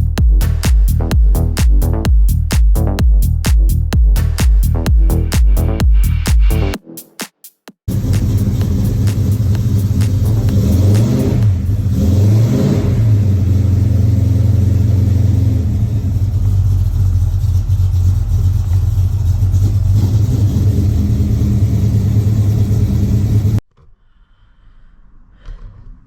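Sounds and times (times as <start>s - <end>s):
car engine revving: 7.9s - 23.6s.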